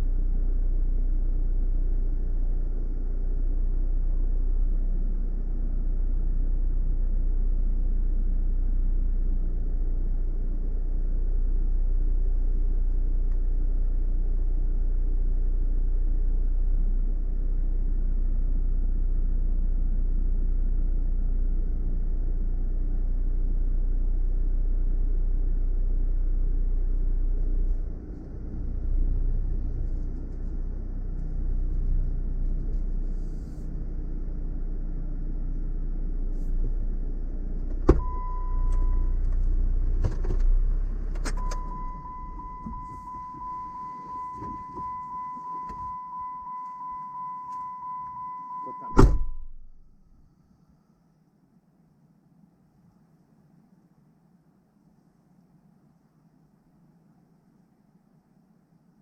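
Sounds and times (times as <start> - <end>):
car engine low rumble: 0.0 - 50.9
short steady beep: 38.0 - 39.2, 41.4 - 49.6.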